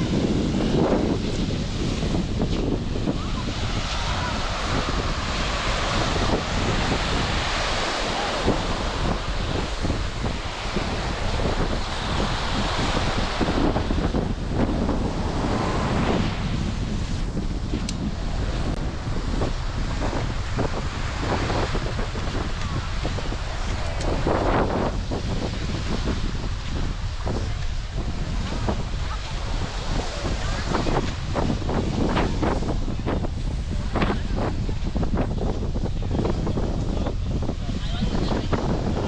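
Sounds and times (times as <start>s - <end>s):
sea surf washing onto beach: 0.0s - 39.0s
wind buffeting microphone: 0.0s - 39.0s.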